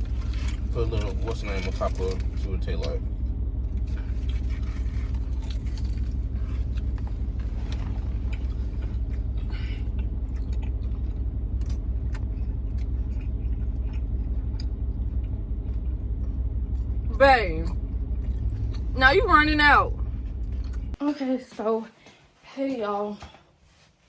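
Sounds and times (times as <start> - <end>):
car cabin rumble: 0.0 - 21.0
person chewing food: 3.8 - 17.0, 20.1 - 21.0.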